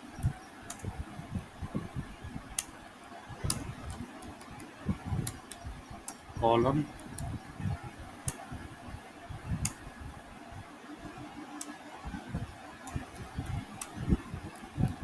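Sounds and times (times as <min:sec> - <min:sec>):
low room noise: 0:00.0 - 0:15.0
computer keyboard keys clicking: 0:00.2 - 0:01.0, 0:03.4 - 0:06.3, 0:12.8 - 0:15.0.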